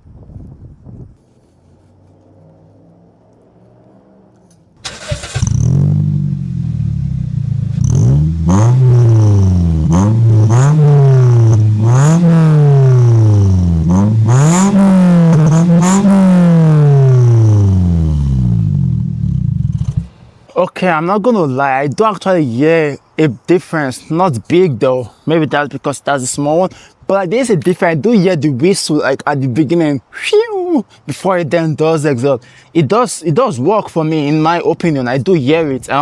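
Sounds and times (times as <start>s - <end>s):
car engine revving: 1.6s - 20.5s.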